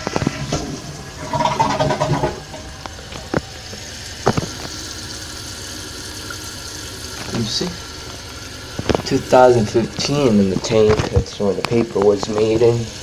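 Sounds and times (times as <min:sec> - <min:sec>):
toilet tank hissing: 0:00.0 - 0:13.0
toilet tank lid knocks: 0:01.2 - 0:02.7.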